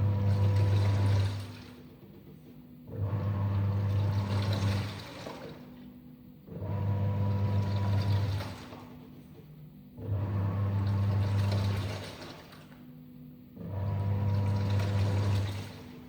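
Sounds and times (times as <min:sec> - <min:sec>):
washing machine motor humming: 0:13.6 - 0:16.0.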